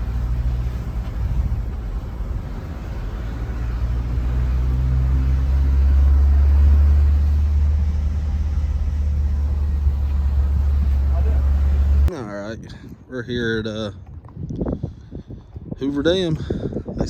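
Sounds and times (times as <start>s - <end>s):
car engine rumble: 0.0s - 12.1s
road noise: 0.0s - 12.2s.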